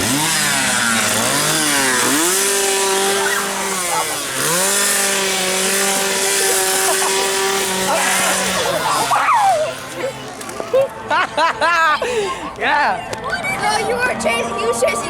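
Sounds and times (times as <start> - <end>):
chainsaw revving: 0.0 - 10.8.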